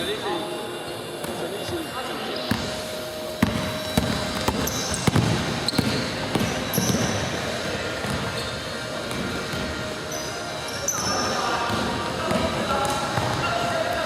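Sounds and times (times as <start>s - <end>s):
basketball game noise: 0.0s - 14.0s
shoe squeaks: 0.0s - 14.0s
basketball bouncing: 3.4s - 7.2s.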